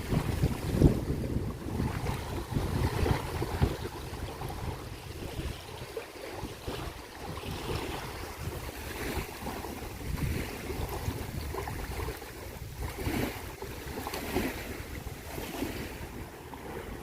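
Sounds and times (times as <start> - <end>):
waves washing on shore: 0.0 - 17.0
wind buffeting microphone: 0.0 - 17.0.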